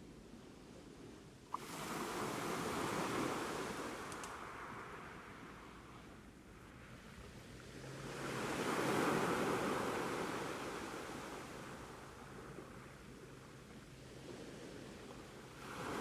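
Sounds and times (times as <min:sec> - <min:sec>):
sea waves washing onto beach: 0:01.5 - 0:05.7, 0:14.2 - 0:16.0.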